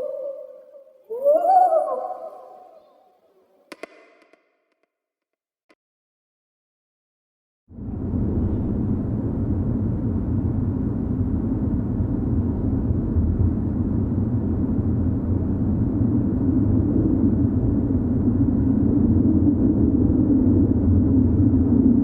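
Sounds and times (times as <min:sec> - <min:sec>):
low rumbling drone: 0:07.7 - 0:22.0.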